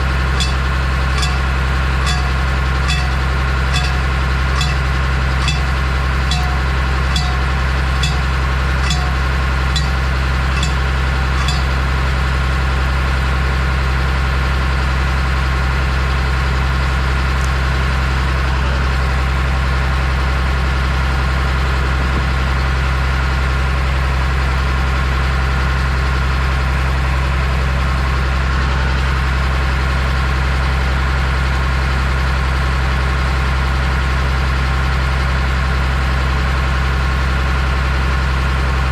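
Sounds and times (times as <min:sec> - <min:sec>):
vehicle engine droning: 0:00.0 - 0:25.6
sharp ticks: 0:00.4 - 0:11.8.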